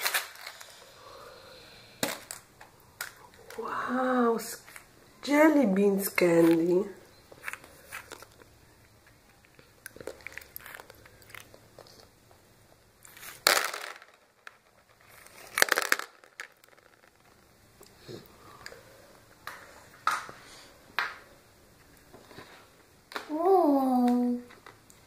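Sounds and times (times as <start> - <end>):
plastic eggs clicking and rustling: 0.0 - 0.8, 2.0 - 3.7, 13.1 - 17.6.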